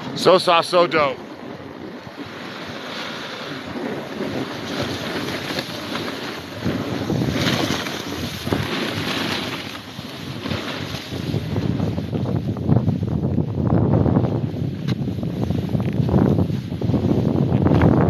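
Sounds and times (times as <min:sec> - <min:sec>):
wind rushing over microphone: 0:00.0 - 0:18.0
snowboard hissing on snow: 0:02.2 - 0:12.2, 0:14.4 - 0:17.6.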